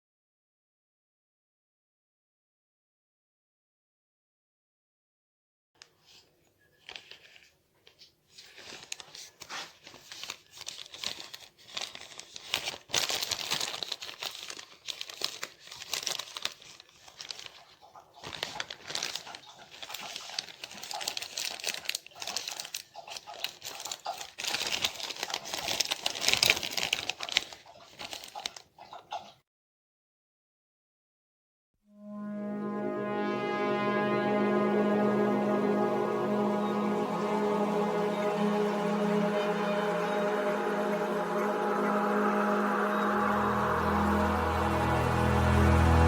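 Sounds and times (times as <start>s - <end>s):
plastic bag crinkling and rustling: 6.0s - 29.3s.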